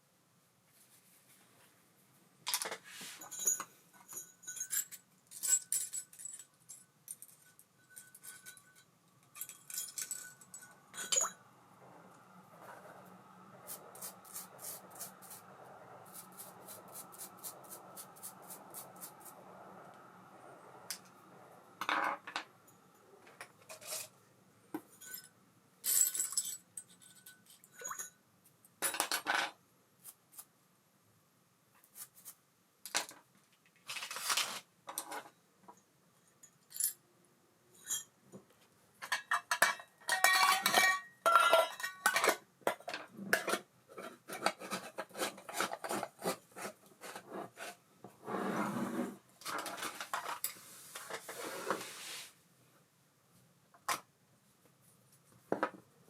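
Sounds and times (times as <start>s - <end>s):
small metal parts clinking: 3.2s - 11.4s, 25.0s - 28.2s
faint hum: 9.6s - 24.7s.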